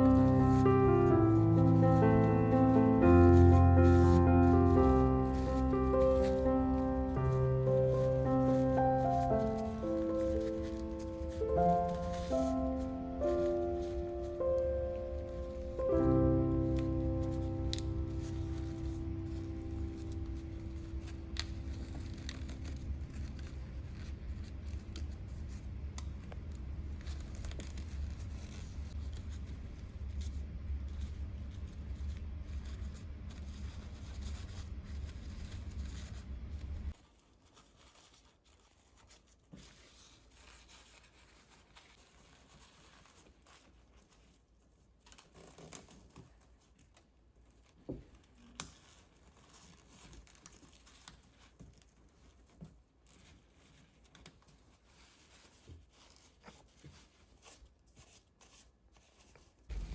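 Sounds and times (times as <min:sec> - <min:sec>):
steady low hum: 0:00.0 - 0:37.0
paper crinkling and tearing: 0:00.0 - 0:59.9.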